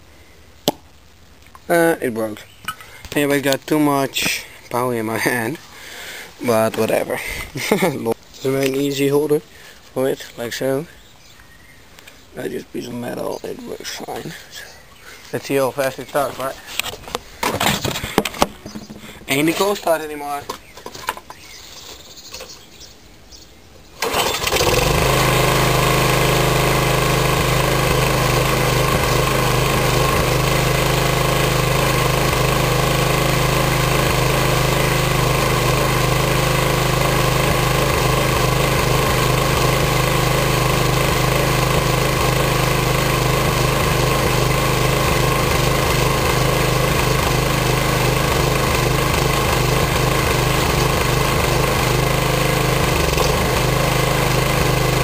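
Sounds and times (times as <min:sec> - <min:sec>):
lawn mower engine running: 0:24.0 - 0:55.0.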